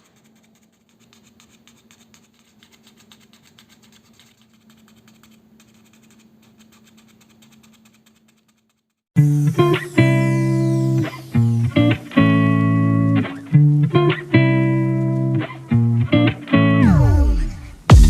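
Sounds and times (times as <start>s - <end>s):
paper fidget toy clicking: 0.0s - 9.0s.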